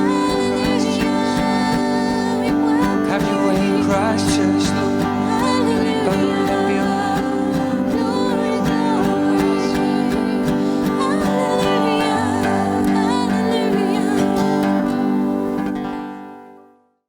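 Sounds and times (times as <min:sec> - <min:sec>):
person singing: 0:00.0 - 0:15.9
acoustic guitar: 0:00.0 - 0:17.0.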